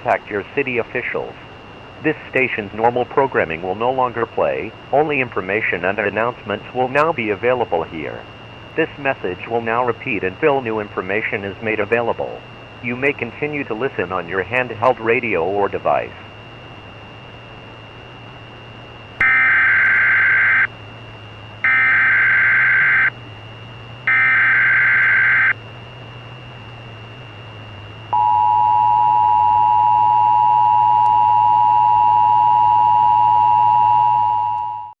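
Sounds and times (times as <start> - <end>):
faint steady hum: 0.0 - 35.0
high whine: 0.0 - 35.0
harsh buzzing data bursts: 0.1 - 34.2
two-tone attention signal: 28.1 - 34.9.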